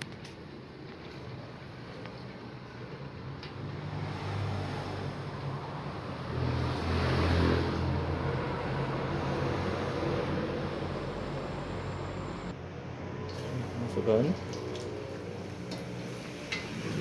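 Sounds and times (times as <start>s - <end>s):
vehicle engine passing by: 3.6s - 17.0s.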